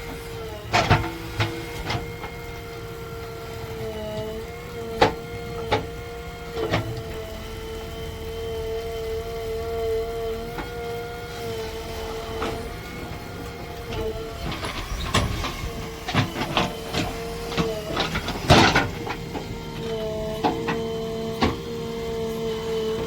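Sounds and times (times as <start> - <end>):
backhoe loader engine whine: 0.0 - 23.0
knocks and clatters: 13.9 - 19.5.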